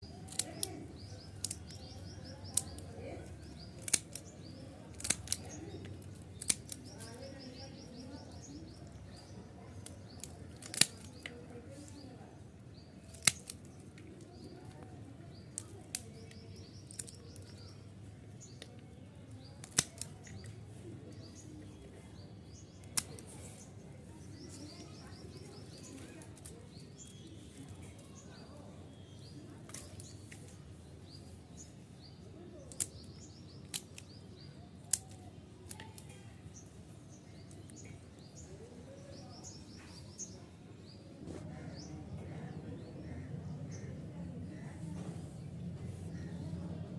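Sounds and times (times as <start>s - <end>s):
low background noise: 0.0s - 46.9s
small birds chirping: 0.0s - 46.9s
sharp clicks: 0.2s - 2.9s, 3.5s - 7.2s, 13.1s - 14.1s, 19.6s - 20.6s, 32.6s - 34.2s, 34.9s - 36.0s.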